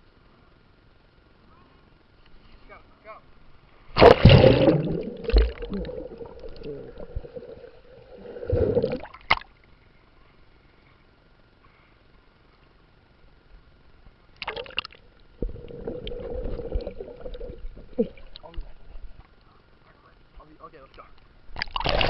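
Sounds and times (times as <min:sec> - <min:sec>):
water sloshing: 0:04.0 - 0:09.4, 0:14.4 - 0:19.1
water splashing: 0:04.0 - 0:09.5, 0:14.4 - 0:18.6, 0:21.6 - 0:22.0.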